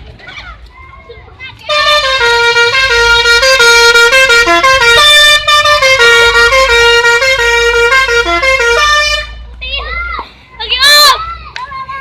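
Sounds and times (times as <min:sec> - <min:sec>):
musical air horn melody: 0:01.7 - 0:09.4.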